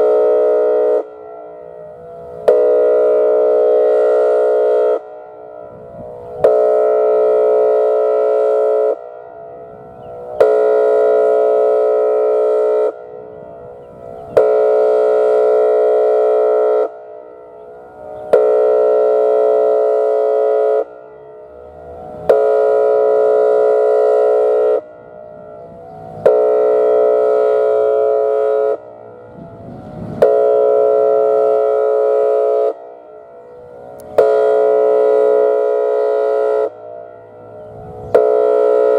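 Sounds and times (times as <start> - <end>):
warning siren horn blasts: 0.0 - 38.9
siren click: 33.6 - 35.7.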